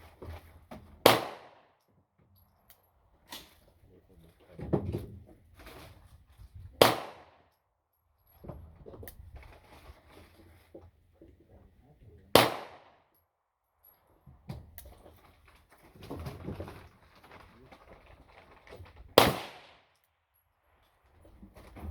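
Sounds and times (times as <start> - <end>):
loud gunshots: 1.0 - 1.6, 6.8 - 7.3, 12.4 - 12.9, 19.2 - 19.8
faint gunshot cracks: 6.8 - 7.3, 12.4 - 13.0, 19.2 - 19.8.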